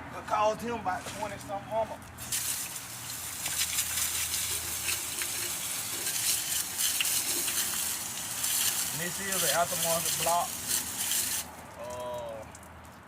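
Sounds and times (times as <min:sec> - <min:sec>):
hissing spray: 0:02.2 - 0:11.5.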